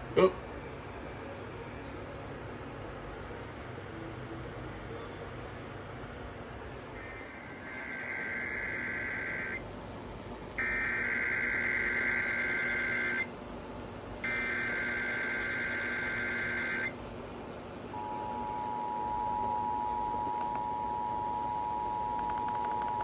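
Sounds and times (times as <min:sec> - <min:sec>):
screechy digital data tone: 0:07.0 - 0:09.6, 0:10.6 - 0:13.3, 0:14.3 - 0:16.9.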